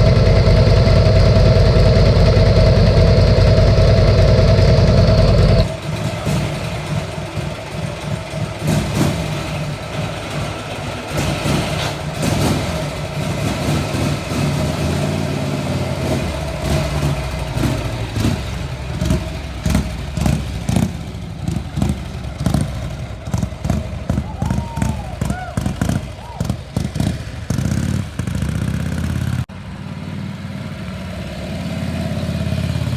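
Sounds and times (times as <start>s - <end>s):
motorcycle engine running: 0.0s - 32.9s.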